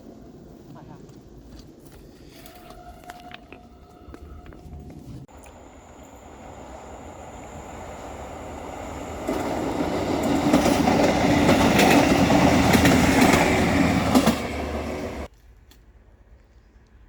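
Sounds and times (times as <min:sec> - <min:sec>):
train wheels clacking on rails: 0:05.9 - 0:15.3.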